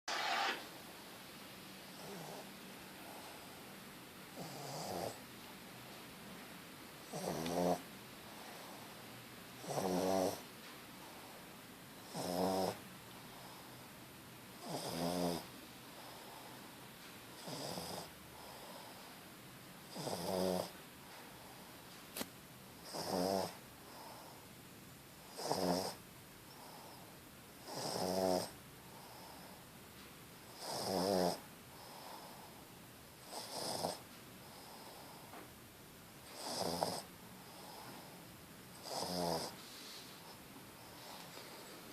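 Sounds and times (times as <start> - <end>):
dog snoring: 1.9 - 3.5, 4.3 - 5.2, 7.0 - 8.9, 9.6 - 10.5, 12.0 - 13.7, 14.6 - 16.6, 17.3 - 19.1, 19.8 - 20.8, 22.8 - 24.4, 25.2 - 29.6, 30.5 - 32.6, 33.2 - 35.4, 36.2 - 41.8
faint breathing: 15.9 - 16.8, 37.4 - 38.3, 39.5 - 41.9.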